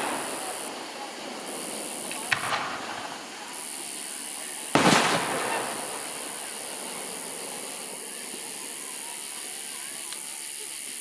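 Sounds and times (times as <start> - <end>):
firework boom: 0.0 - 8.6.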